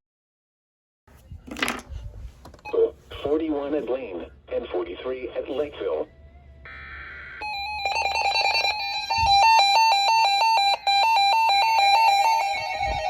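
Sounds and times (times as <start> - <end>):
two-pitch alarm: 6.7 - 13.0.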